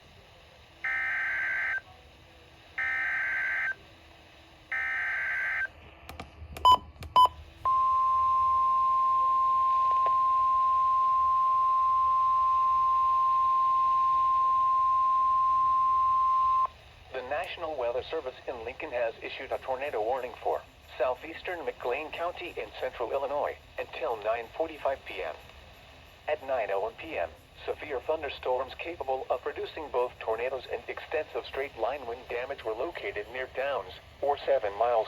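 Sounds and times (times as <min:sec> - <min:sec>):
steady warning tone: 0:00.6 - 0:05.7, 0:07.2 - 0:16.8.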